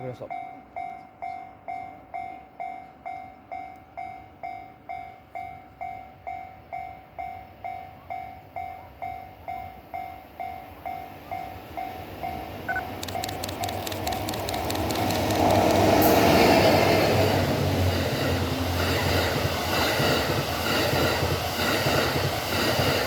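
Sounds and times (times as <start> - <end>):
level-crossing warning bell ringing: 0.0 - 13.4
train rumble: 0.0 - 23.0
rapid clicking of train wheels: 10.9 - 23.0.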